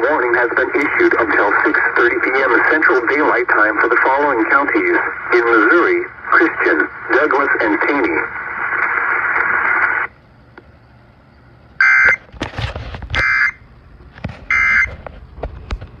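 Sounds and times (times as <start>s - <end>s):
radio static hiss: 0.0s - 11.0s.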